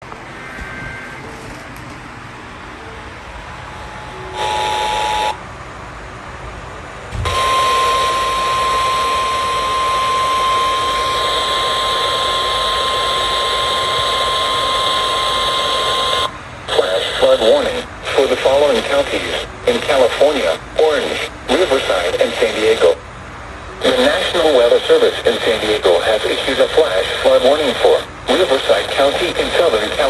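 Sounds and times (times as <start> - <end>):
steady warning alarm tone: 0.2 - 1.4, 2.8 - 5.4, 7.2 - 23.0, 23.8 - 30.0
two-tone attention signal: 0.4 - 1.3, 3.8 - 5.4, 7.2 - 16.3, 23.7 - 24.5
receiver hiss: 7.2 - 23.0, 23.6 - 30.0.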